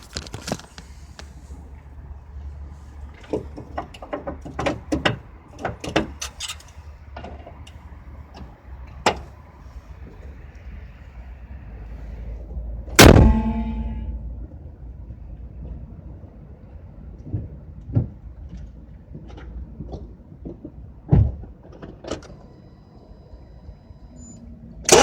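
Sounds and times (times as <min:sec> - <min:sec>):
loud metallic bang: 0:13.0 - 0:14.6.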